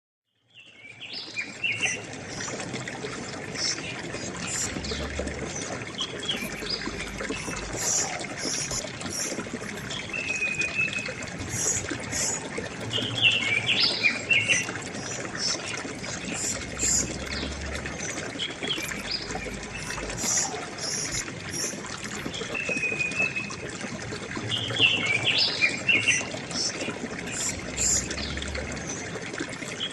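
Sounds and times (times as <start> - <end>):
river water flowing: 0.6 - 29.9
small birds chirping: 3.6 - 23.4.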